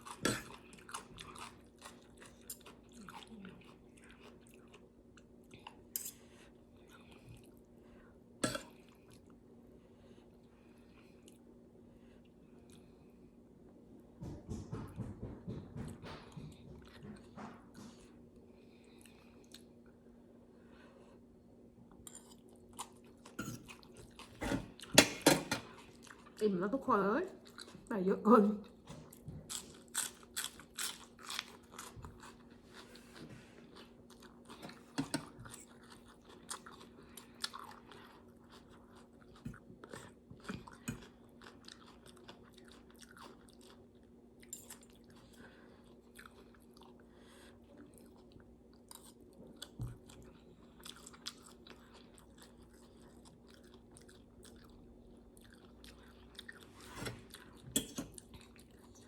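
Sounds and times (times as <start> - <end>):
person chewing crunchy food: 0.0 - 7.7, 21.9 - 26.4, 28.7 - 59.0
faint steady hum: 0.0 - 59.0.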